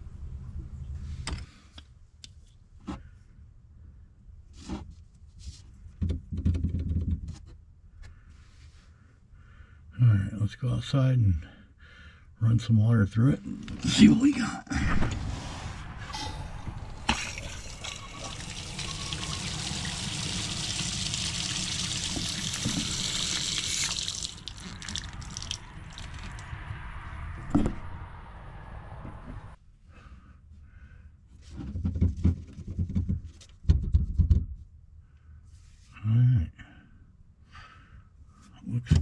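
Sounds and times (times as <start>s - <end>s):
low thumps: 14.7s - 20.4s
water running from hose faucet: 17.1s - 26.4s.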